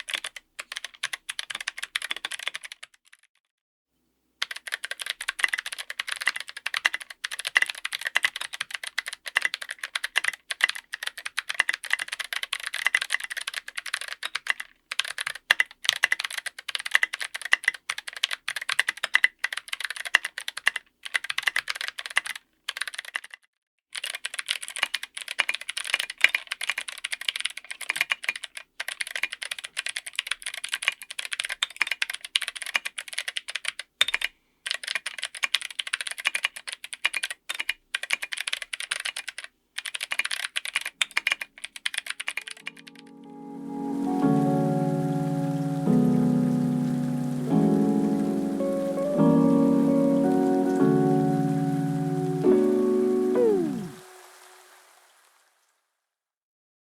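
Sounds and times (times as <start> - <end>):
mechanical keyboard typing: 0.0 - 3.3, 4.4 - 54.2.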